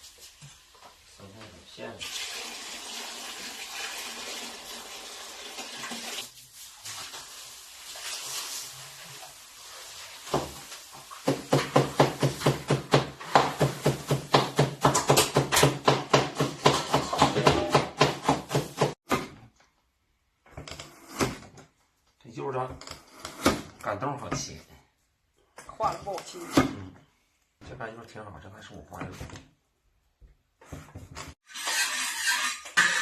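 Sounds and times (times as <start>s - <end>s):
tap water running: 2.0s - 14.4s
knife chopping on cutting board: 11.2s - 19.3s.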